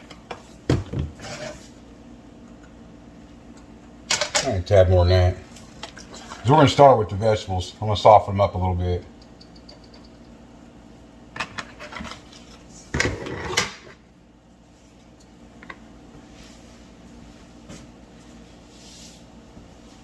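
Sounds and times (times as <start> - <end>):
cookware clatter and scrape: 0.9 - 1.7.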